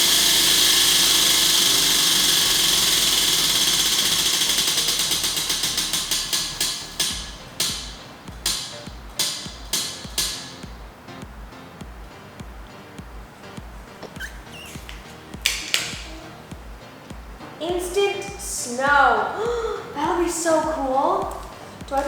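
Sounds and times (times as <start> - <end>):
prize wheel pointer clicking: 0.0 - 10.6.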